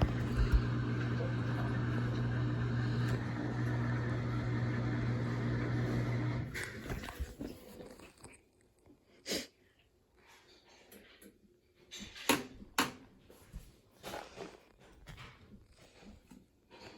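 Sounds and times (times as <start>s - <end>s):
washing machine humming: 0.0s - 7.4s.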